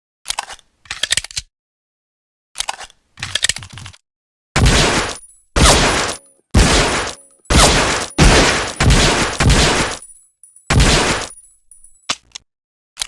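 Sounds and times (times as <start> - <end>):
pistol shots: 4.6 - 10.1, 10.7 - 11.4.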